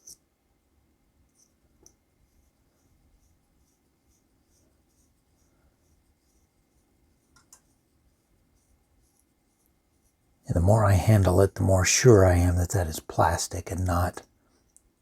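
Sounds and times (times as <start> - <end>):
pencil scratching on paper: 2.2 - 10.2.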